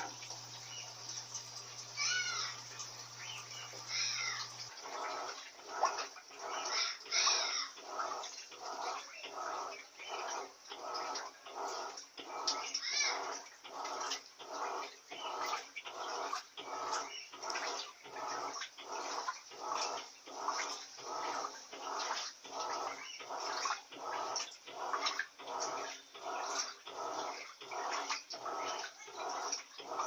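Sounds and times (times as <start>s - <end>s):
washing machine churning water: 0.0s - 30.0s.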